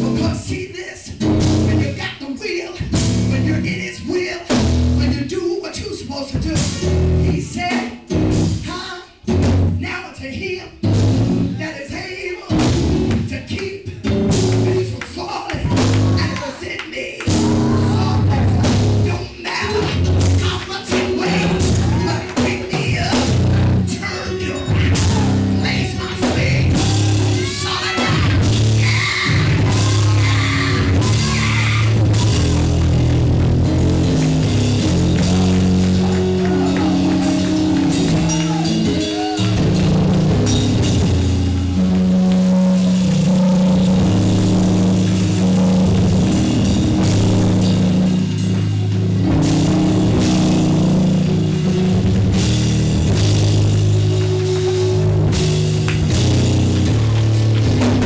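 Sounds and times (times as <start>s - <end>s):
live band music: 0.0s - 10.0s, 10.6s - 58.0s.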